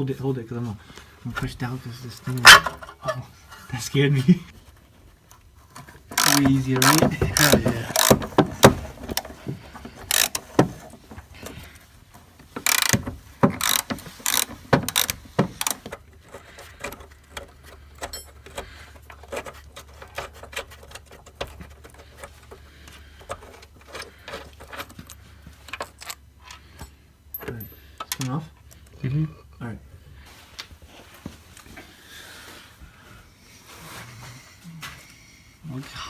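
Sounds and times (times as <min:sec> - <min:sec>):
hand tools clicking and knocking: 0:02.3 - 0:03.2, 0:05.7 - 0:28.9.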